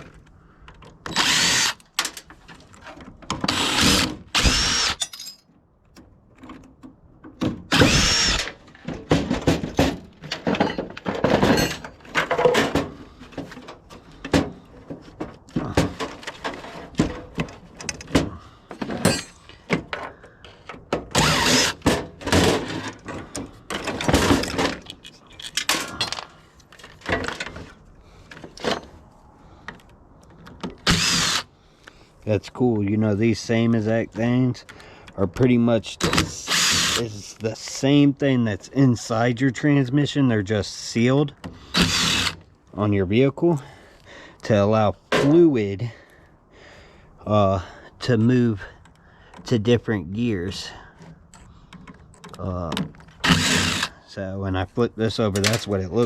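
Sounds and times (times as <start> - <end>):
power drill whining: 1.1 - 1.9, 3.4 - 5.0, 7.7 - 8.6, 21.1 - 21.8, 30.8 - 31.5, 36.4 - 37.0, 41.7 - 42.4, 53.2 - 53.9.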